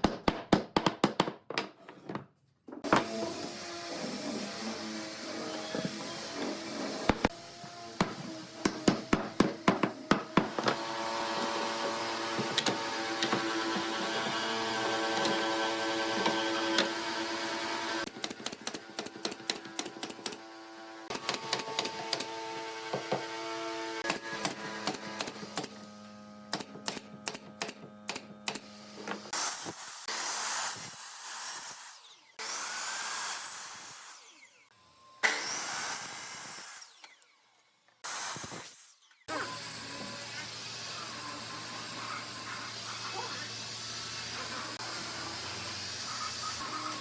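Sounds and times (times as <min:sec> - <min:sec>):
power tool motor whine: 0:10.0 - 0:18.2, 0:39.3 - 0:47.0.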